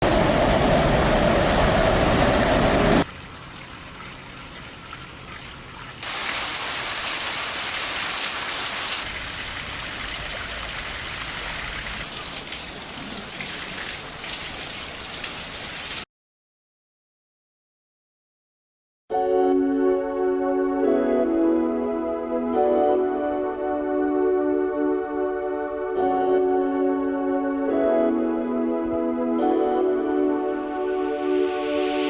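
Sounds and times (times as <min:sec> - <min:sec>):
running water: 0:00.0 - 0:16.0
rain: 0:00.0 - 0:16.1.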